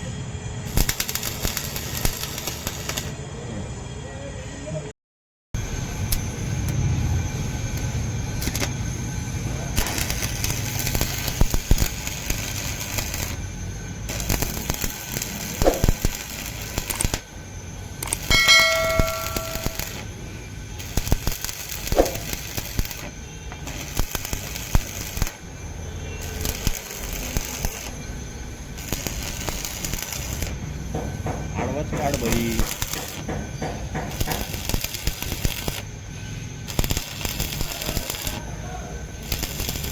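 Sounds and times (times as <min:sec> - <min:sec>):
welding arc crackling: 0:00.7 - 0:03.2, 0:05.6 - 0:39.9
brief pitched tone: 0:18.3 - 0:20.0.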